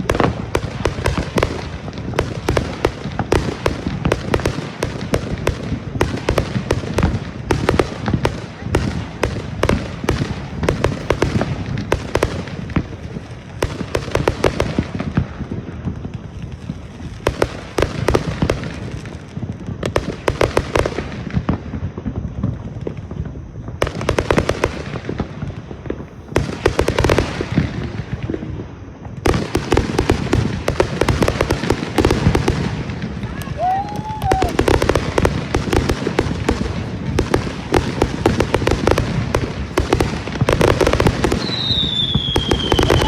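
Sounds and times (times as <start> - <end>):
fireworks bangs and crackling: 0.0 - 43.0.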